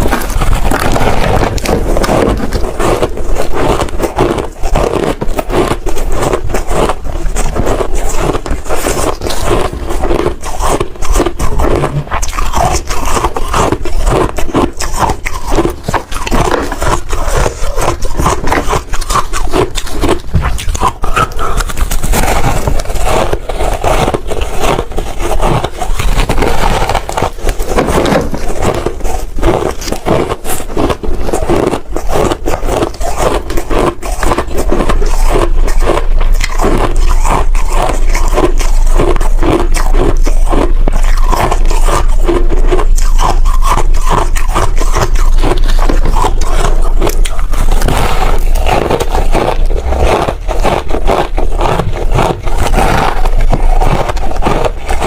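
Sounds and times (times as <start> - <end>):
ice being chewed: 0.0 - 55.0.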